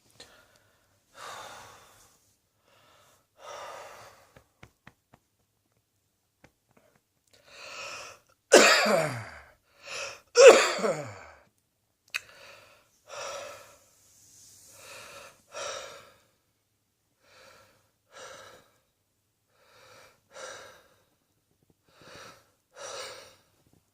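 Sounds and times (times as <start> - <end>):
heavy breathing: 0.2 - 4.5, 6.8 - 8.2, 14.6 - 16.4, 19.6 - 21.2, 21.8 - 23.5
person coughing: 8.5 - 9.5, 10.4 - 11.4.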